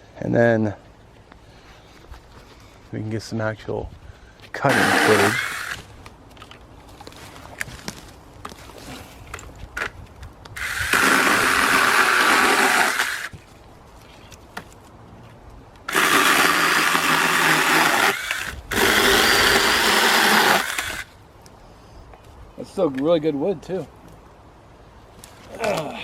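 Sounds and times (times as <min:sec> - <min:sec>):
battery chainsaw cutting wood: 0:04.6 - 0:05.9, 0:10.6 - 0:13.3, 0:15.9 - 0:21.1.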